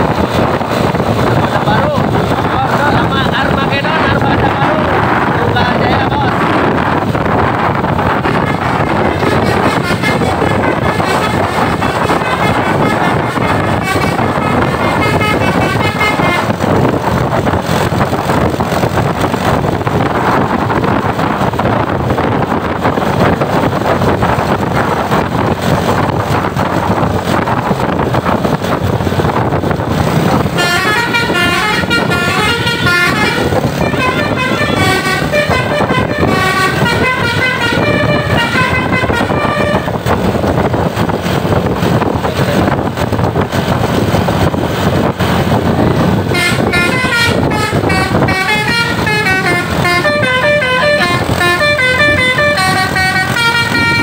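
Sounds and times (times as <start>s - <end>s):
bus engine and road noise: 0.0s - 54.0s
musical air horn playing a tune: 8.2s - 16.6s, 30.5s - 40.0s, 46.3s - 54.0s.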